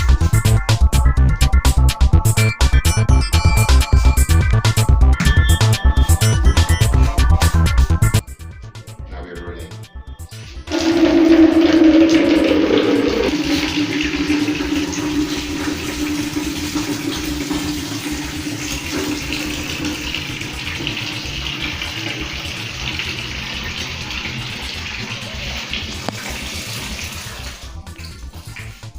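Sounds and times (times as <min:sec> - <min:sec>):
water running into a bucket: 0:10.3 - 0:28.9.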